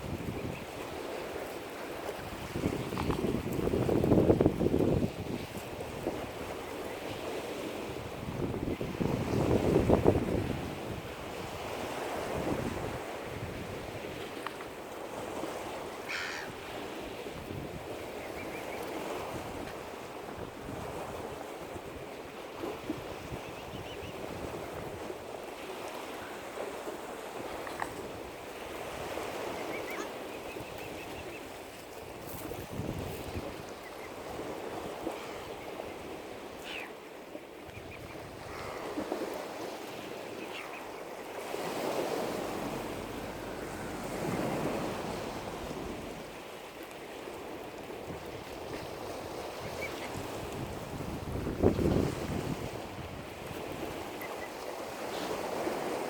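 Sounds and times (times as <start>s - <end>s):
wind on microphone: 0.0s - 37.0s, 37.6s - 56.0s
lake water lapping at shore: 0.0s - 56.0s
wind rushing: 42.3s - 46.4s.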